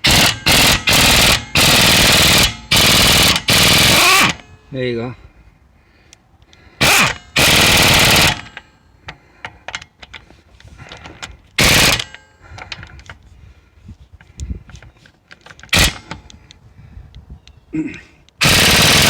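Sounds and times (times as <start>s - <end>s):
pneumatic impact wrench hammering: 0.0s - 4.5s, 6.8s - 8.7s, 11.6s - 12.3s, 15.6s - 16.3s, 18.4s - 19.0s.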